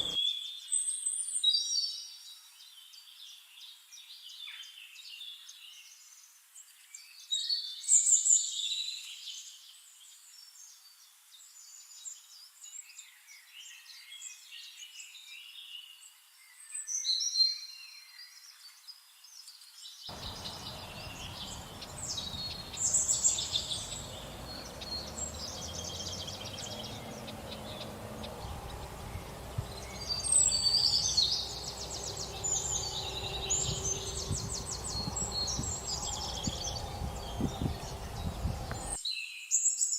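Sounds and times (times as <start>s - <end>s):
outdoor ambience: 20.1s - 39.0s
songbirds chirping and trilling: 20.1s - 39.0s.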